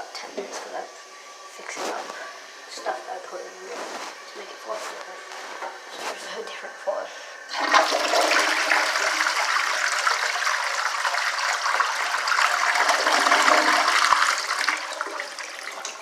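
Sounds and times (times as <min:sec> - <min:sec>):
toilet flushing: 0:07.1 - 0:16.0.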